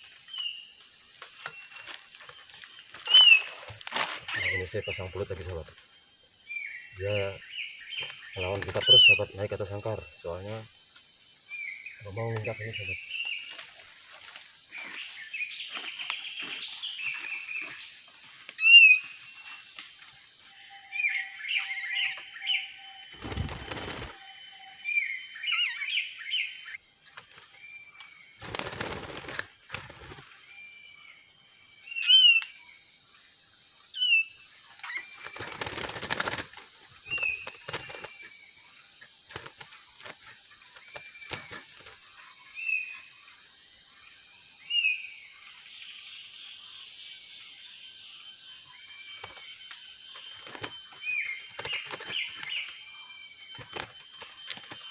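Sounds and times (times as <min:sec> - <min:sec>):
birds chirping: 0:00.0 - 0:54.9
wing flapping and rustling: 0:00.8 - 0:05.8, 0:08.0 - 0:09.2, 0:23.1 - 0:24.2, 0:27.0 - 0:27.6, 0:28.4 - 0:30.4, 0:34.8 - 0:38.3, 0:39.1 - 0:42.3, 0:50.1 - 0:52.8, 0:53.5 - 0:54.9.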